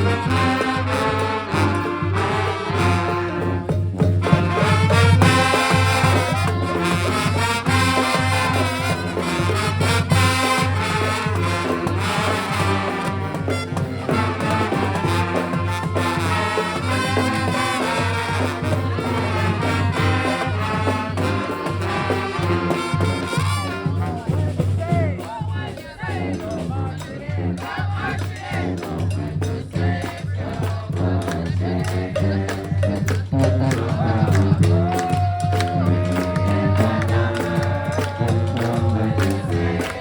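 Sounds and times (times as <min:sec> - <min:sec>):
brass band playing: 0:00.0 - 0:40.0
sharp percussive hits: 0:26.2 - 0:40.0.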